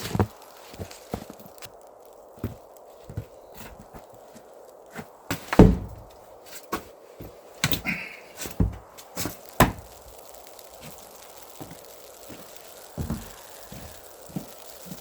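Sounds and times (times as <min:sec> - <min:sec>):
knocks and thumps on wood: 0:05.3 - 0:06.0, 0:09.6 - 0:09.8.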